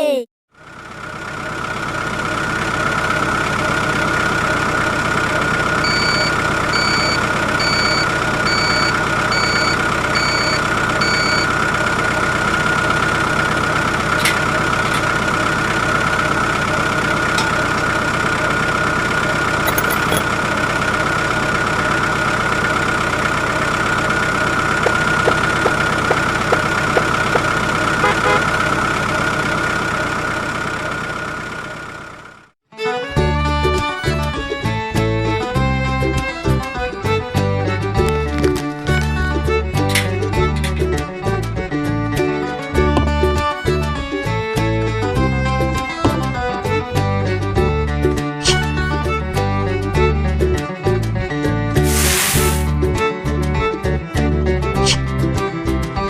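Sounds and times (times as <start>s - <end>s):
engine running with high whine: 0.6s - 32.5s, 33.3s - 50.1s
short electronic beeps: 5.8s - 11.5s, 19.7s - 20.2s.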